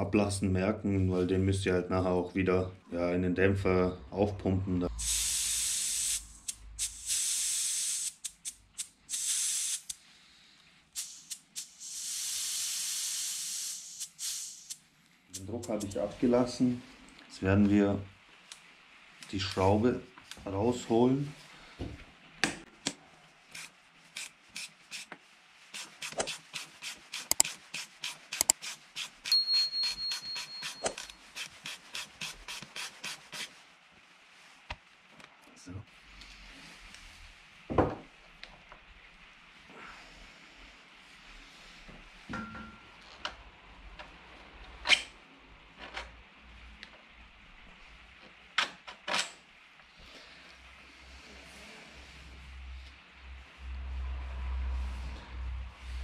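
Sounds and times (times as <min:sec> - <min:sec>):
air hissing from shock: 0:04.9 - 0:16.1
thin high steady tone: 0:29.3 - 0:31.2.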